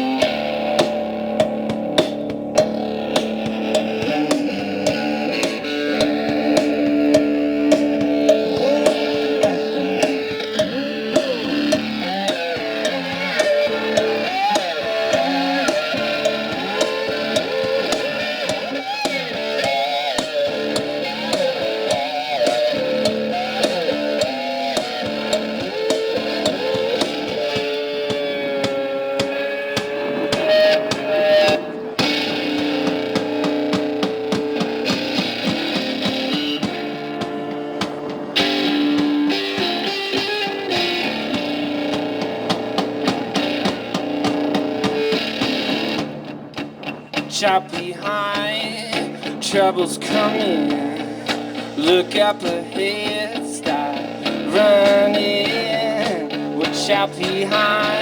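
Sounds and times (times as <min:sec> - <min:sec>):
steady drum beat: 0:00.0 - 0:31.7
electric guitar solo: 0:00.0 - 0:58.0.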